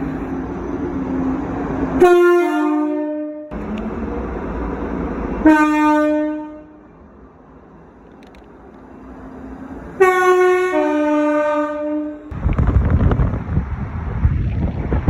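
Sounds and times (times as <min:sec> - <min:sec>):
train horn: 0:02.0 - 0:03.6, 0:05.4 - 0:06.8, 0:10.0 - 0:12.3
rushing noise: 0:12.3 - 0:15.0.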